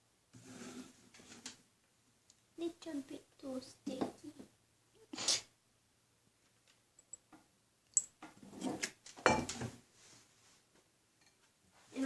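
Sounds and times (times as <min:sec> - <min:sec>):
soft scrapes and knocks: 0:00.3 - 0:01.6.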